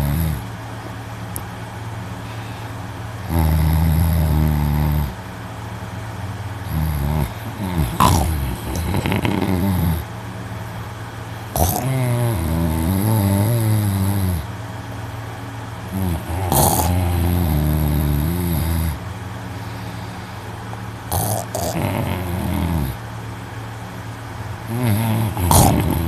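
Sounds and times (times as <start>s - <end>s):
man snoring loudly: 0.0s - 0.5s, 3.2s - 5.2s, 6.6s - 10.1s, 11.5s - 14.5s, 15.9s - 19.0s, 21.1s - 23.0s, 24.6s - 26.0s.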